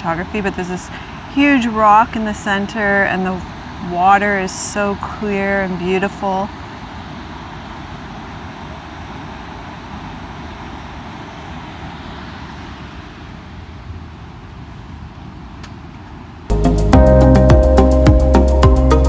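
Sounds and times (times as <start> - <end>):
waterfall rushing: 0.0 - 13.4.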